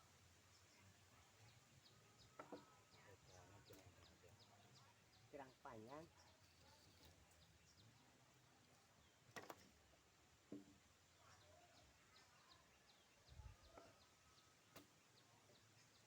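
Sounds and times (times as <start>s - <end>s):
faint high bird chirps: 11.2s - 16.0s.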